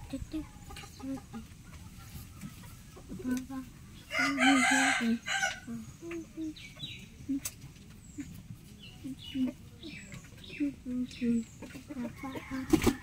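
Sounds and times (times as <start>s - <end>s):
chickens clucking: 0.0s - 13.0s
rooster crowing: 4.1s - 5.7s.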